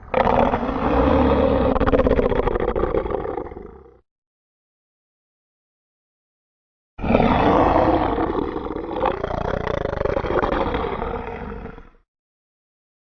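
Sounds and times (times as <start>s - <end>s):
rough creature roar: 0.0s - 4.0s, 7.0s - 12.0s.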